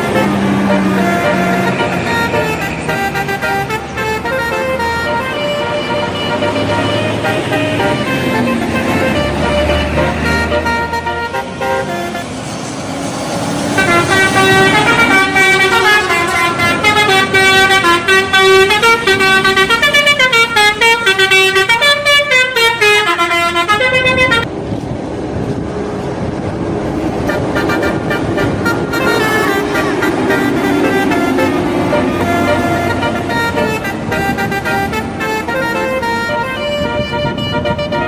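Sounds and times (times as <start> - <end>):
musical bus air horn: 0.0 - 12.9, 13.8 - 24.5, 27.2 - 38.0
bus engine: 0.0 - 38.0
road noise: 0.0 - 38.0.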